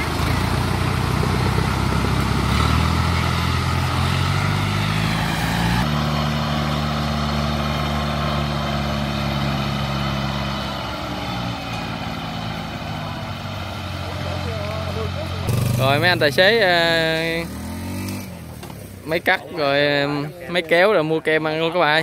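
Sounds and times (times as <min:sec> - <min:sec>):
diesel engine running: 0:00.0 - 0:20.5.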